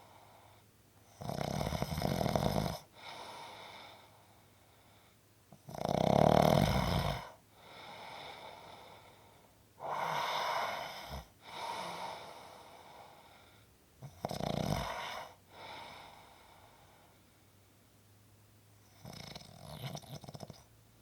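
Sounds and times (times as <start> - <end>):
soft breaths: 0.0 - 1.2, 2.7 - 5.7, 6.9 - 18.1
snoring with deep rattle: 1.0 - 4.0, 5.5 - 9.0, 9.8 - 13.2, 14.0 - 17.0, 18.8 - 20.7.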